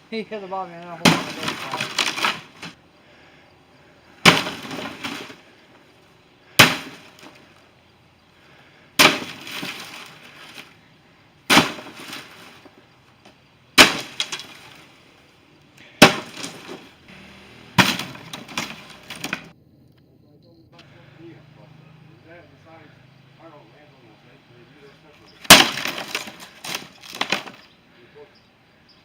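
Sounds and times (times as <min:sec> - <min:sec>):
debris rattling and breaking: 0:01.0 - 0:02.8, 0:04.2 - 0:05.6, 0:06.6 - 0:07.5, 0:09.0 - 0:10.8, 0:11.5 - 0:12.8, 0:13.8 - 0:15.0, 0:16.0 - 0:17.0, 0:17.8 - 0:19.5, 0:25.4 - 0:27.7.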